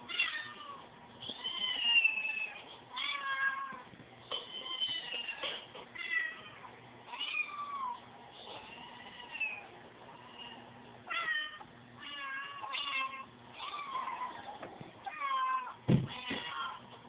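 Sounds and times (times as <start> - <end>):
cat meowing: 0.1 - 3.8.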